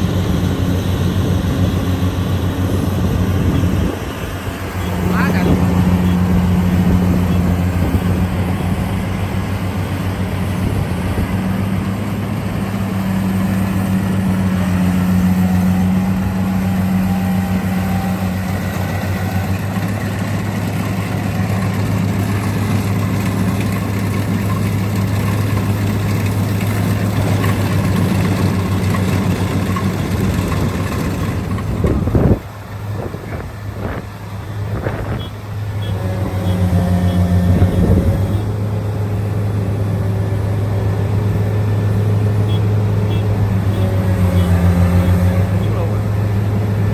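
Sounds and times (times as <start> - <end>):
engine running steadily: 0.0 - 46.9.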